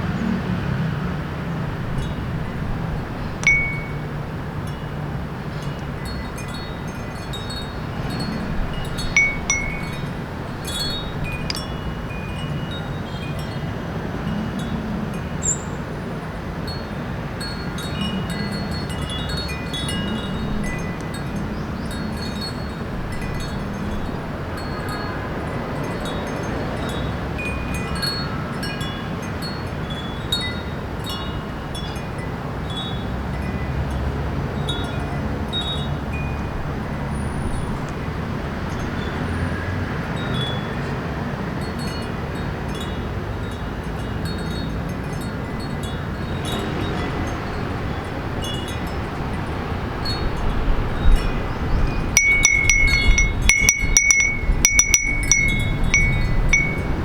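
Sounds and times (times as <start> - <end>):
city traffic hum: 0.0 - 57.0
wind: 0.0 - 57.0
wind chime tinkling: 3.4 - 13.6, 16.7 - 25.0, 41.7 - 57.0.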